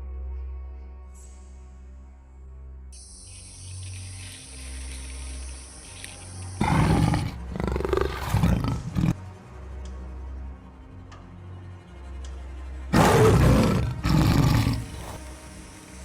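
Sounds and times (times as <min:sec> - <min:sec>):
low droning music: 0:00.0 - 0:16.0
tiger roaring and snarling: 0:06.6 - 0:09.2, 0:13.0 - 0:15.3.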